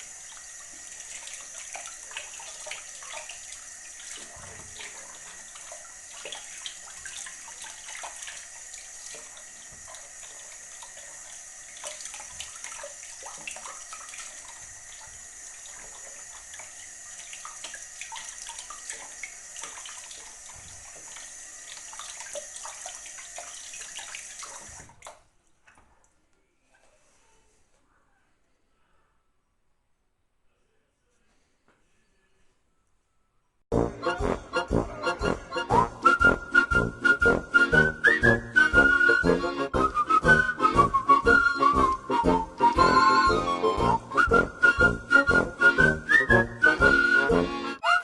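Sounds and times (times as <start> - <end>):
tap water running into sink: 0.0 - 25.3.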